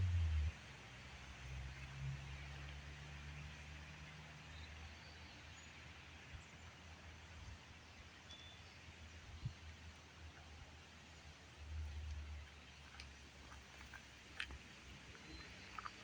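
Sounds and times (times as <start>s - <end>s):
low rumble: 0.0s - 0.6s.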